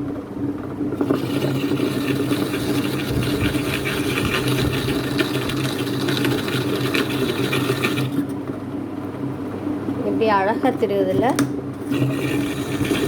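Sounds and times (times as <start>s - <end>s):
coconut scraping: 1.0s - 8.4s, 11.8s - 13.0s
electric motor humming: 1.0s - 8.4s, 11.2s - 13.0s.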